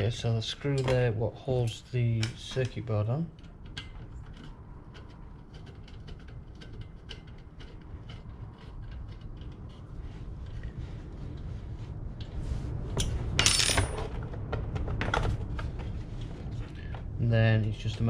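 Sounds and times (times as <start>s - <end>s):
low rumble: 8.2s - 18.0s.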